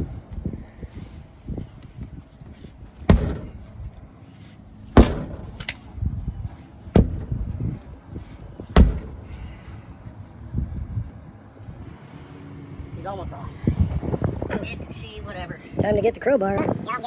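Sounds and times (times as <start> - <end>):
hard metallic blows ringing: 3.1 - 3.7, 5.0 - 5.9, 7.0 - 7.6, 8.8 - 9.6.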